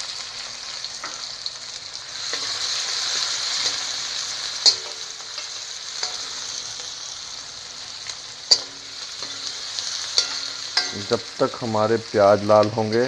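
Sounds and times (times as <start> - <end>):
onions sizzling in hot fat: 0.0 - 13.0
spoon clinking against pan: 4.6 - 6.4, 8.5 - 11.1.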